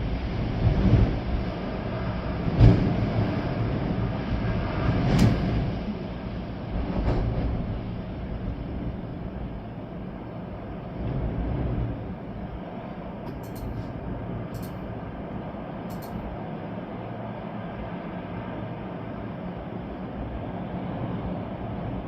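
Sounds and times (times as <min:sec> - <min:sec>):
rain: 0:00.0 - 0:22.0
storm wind gusting through trees: 0:00.0 - 0:22.0
sharp ticks: 0:13.3 - 0:13.8, 0:14.6 - 0:14.8, 0:15.9 - 0:16.3.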